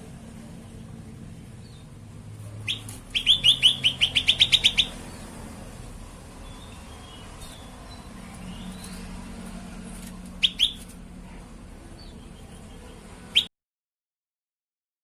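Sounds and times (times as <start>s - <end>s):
bird calling with fast trill: 2.6s - 5.3s, 10.4s - 10.9s, 12.0s - 13.5s.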